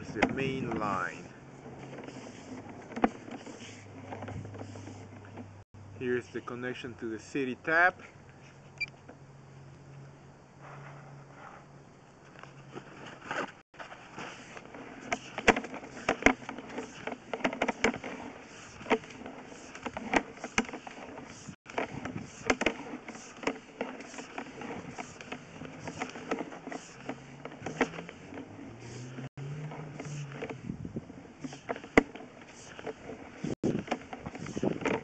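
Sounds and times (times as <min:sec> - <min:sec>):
sharp clicks and knocks: 0:00.0 - 0:01.0, 0:01.6 - 0:05.6, 0:14.6 - 0:30.6, 0:31.4 - 0:35.0.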